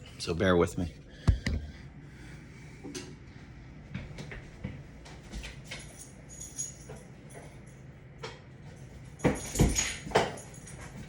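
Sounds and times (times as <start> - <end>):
metallic jingling: 5.7 - 7.8, 9.0 - 11.0
bright clinks: 5.7 - 7.9, 9.0 - 11.0.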